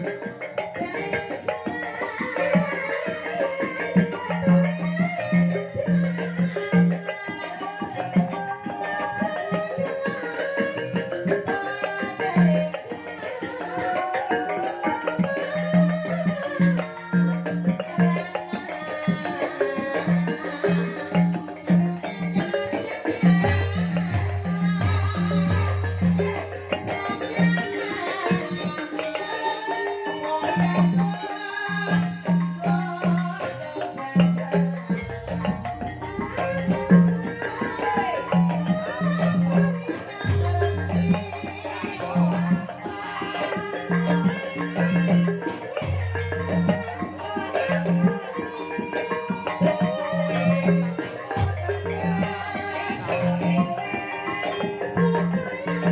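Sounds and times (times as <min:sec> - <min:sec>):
gamelan music over a sound system: 0:00.0 - 0:55.9
pitched percussion melody: 0:00.0 - 0:55.9.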